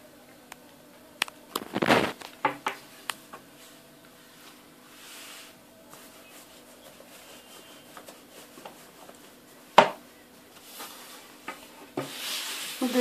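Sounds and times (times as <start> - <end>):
dough rubbing on wooden board: 4.9 - 9.5.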